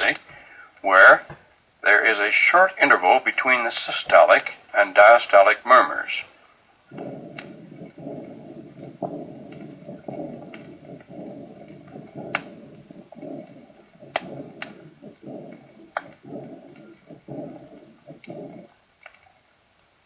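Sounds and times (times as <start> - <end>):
sharp clicks: 6.9 - 18.4
heart murmur through stethoscope: 6.9 - 18.7.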